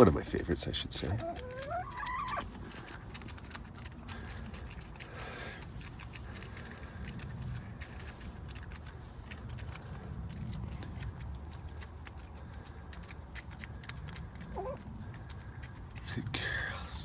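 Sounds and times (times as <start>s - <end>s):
chicken squealing call: 1.2s - 2.6s, 14.5s - 14.8s.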